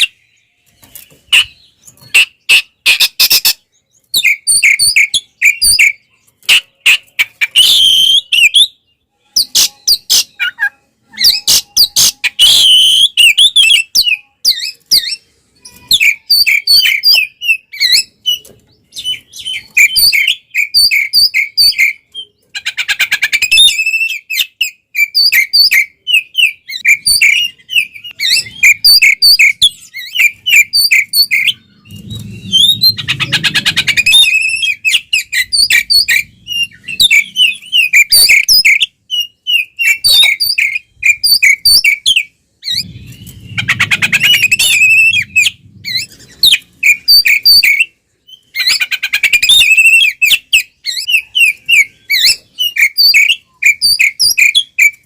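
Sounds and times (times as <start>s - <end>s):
bird singing: 0.0s - 55.0s
loud whistled notes: 42.7s - 47.4s.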